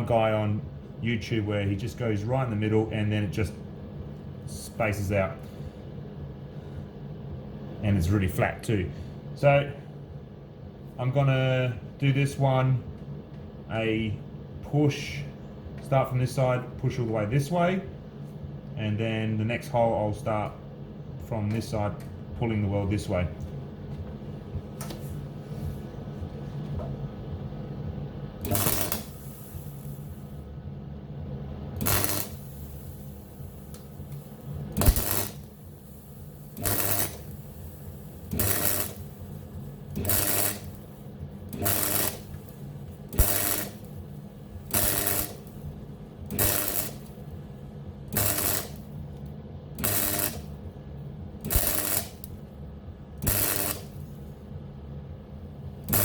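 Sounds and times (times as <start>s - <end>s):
low steady hum: 0.0s - 56.0s
welder firing in short bursts: 28.4s - 30.3s, 31.8s - 45.7s, 46.3s - 47.2s, 48.1s - 48.9s, 49.8s - 50.6s, 51.4s - 52.3s, 53.2s - 54.2s.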